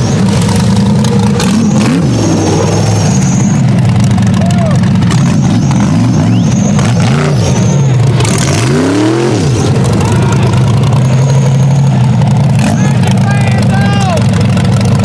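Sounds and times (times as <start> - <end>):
engine revving in blips: 0.0 - 15.0.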